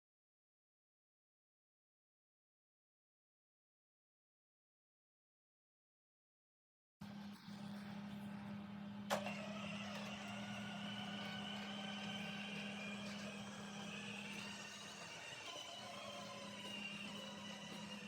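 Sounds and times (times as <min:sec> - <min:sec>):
electric motors whining: 0:07.0 - 0:18.0.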